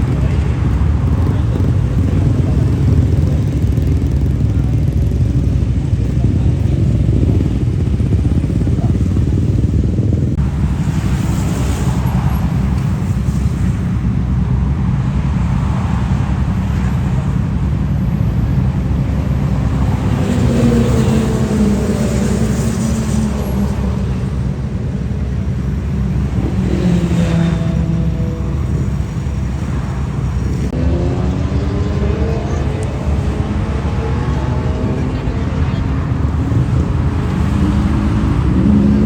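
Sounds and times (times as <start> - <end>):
traffic rumble: 0.0 - 39.0
vehicle engine passing: 18.0 - 39.0.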